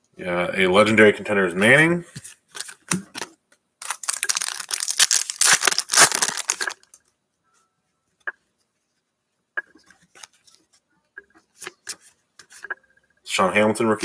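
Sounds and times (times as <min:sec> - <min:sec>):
wrapper tearing and crinkling: 0:03.8 - 0:07.0.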